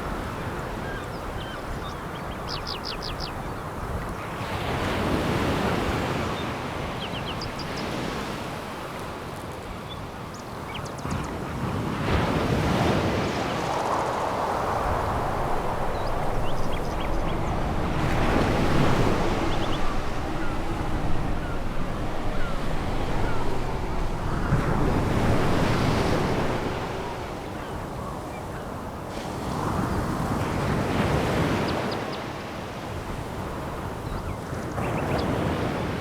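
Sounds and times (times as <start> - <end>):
waves washing on a pebble beach: 11.6 - 34.0.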